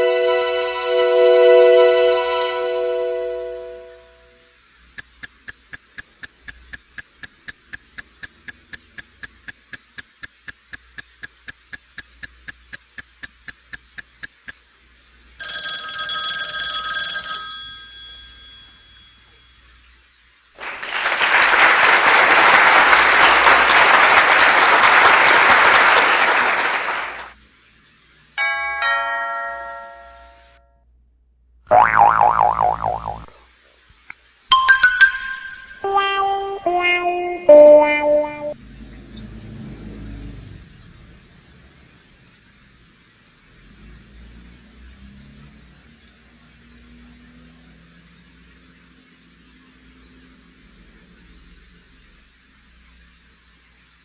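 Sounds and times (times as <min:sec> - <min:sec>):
bell ringing rapidly: 0:00.0 - 0:03.3, 0:15.4 - 0:19.7, 0:34.5 - 0:36.0
ringing chime: 0:00.0 - 0:04.1, 0:17.2 - 0:19.8, 0:34.5 - 0:35.9
short multi-tone chime: 0:00.0 - 0:04.1, 0:34.5 - 0:35.9
loud hiss-like noise: 0:39.8 - 0:47.1.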